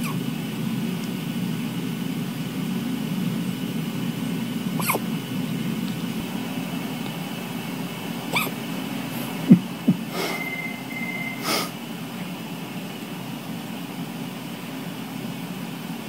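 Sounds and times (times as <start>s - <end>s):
steady background hum: 0.0s - 16.0s
boy hiccuping: 8.4s - 8.6s.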